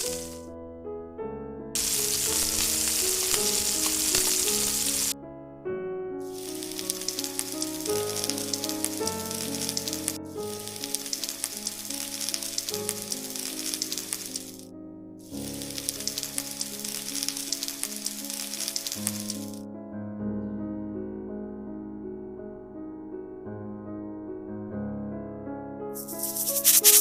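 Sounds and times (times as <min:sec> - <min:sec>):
chicken sizzling in hot oil: 0:00.0 - 0:00.4, 0:01.8 - 0:05.2, 0:06.2 - 0:14.6, 0:15.2 - 0:19.6, 0:26.0 - 0:27.0
background music: 0:00.0 - 0:20.0.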